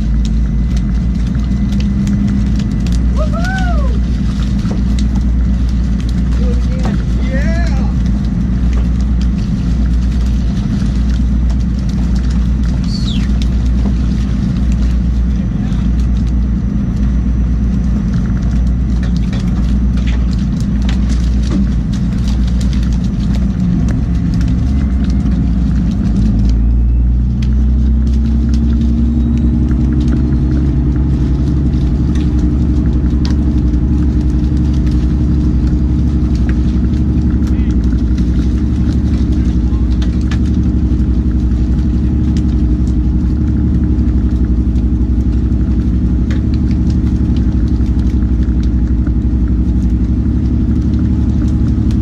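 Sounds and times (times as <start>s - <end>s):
boat engine running: 0.0s - 52.0s.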